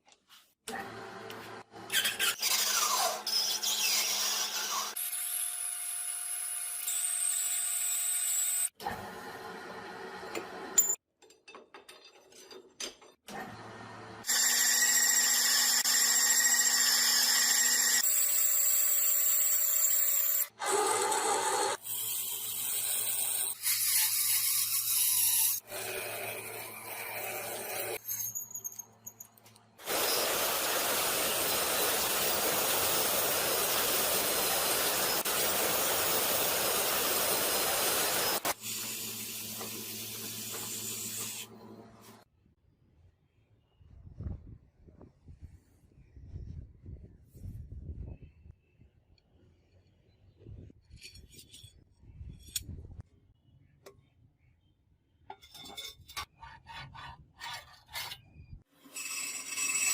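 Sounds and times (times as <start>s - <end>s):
rubbing and filing on workpiece: 55.7s - 58.5s.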